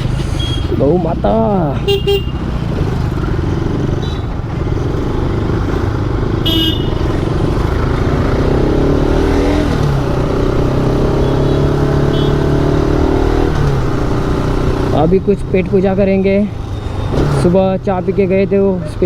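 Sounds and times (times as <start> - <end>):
road and wind noise: 0.0 - 19.0
vehicle horn toot: 1.9 - 2.4, 6.4 - 7.1, 11.2 - 12.5
motorcycle engine running: 1.9 - 17.1.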